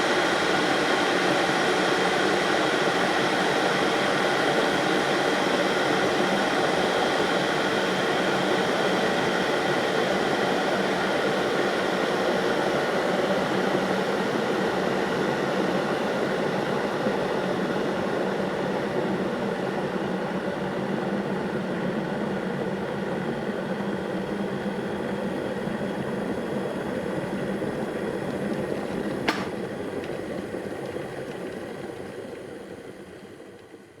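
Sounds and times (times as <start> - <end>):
electric kettle boiling: 0.0 - 34.0
kettle switch click: 29.0 - 29.7.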